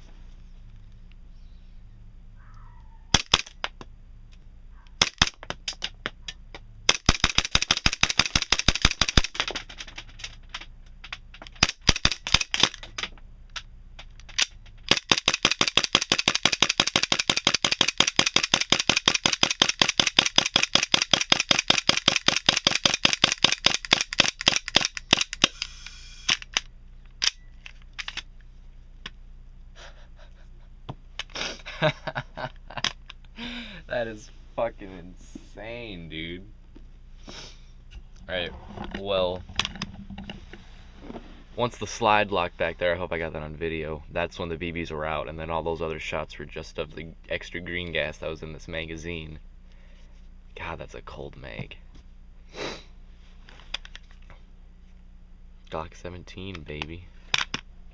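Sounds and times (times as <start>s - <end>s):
airsoft pistol shots: 3.1s - 3.6s, 5.0s - 5.4s, 6.9s - 9.3s, 11.6s - 12.8s, 14.9s - 25.4s.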